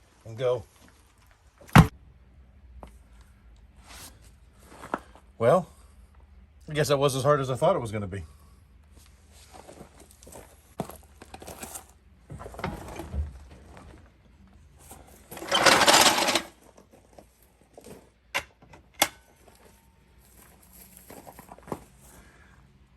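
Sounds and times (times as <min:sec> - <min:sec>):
power tool rattling: 0:15.4 - 0:16.5.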